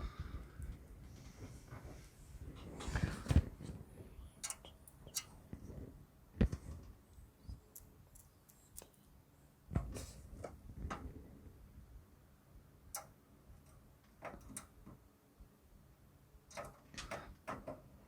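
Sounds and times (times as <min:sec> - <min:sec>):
small metal clicks: 0:04.4 - 0:05.4, 0:07.7 - 0:09.1, 0:12.9 - 0:14.8.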